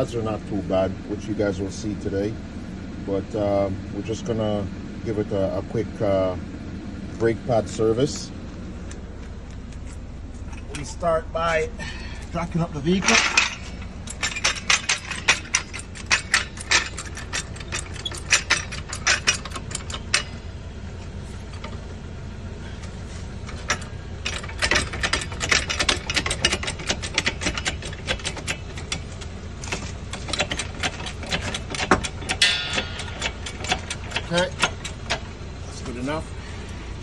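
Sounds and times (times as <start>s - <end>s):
steady low hum: 0.0s - 37.0s
car jack clicking and clanking: 12.3s - 20.6s, 22.8s - 36.0s.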